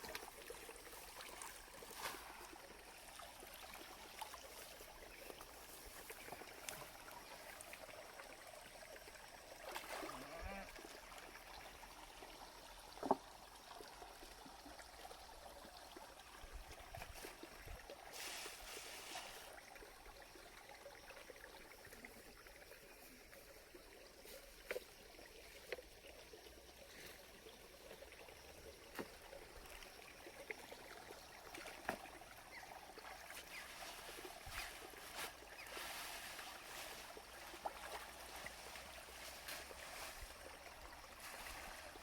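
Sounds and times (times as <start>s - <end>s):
water trickling: 0.0s - 42.0s.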